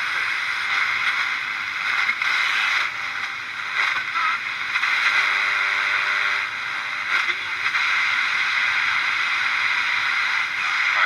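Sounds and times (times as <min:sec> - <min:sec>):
radio static hiss: 0:00.0 - 0:11.0.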